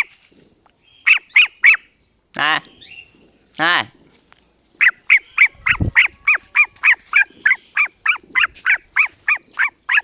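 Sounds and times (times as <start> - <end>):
cockatiel calling: 0.9 - 2.0, 4.8 - 10.0.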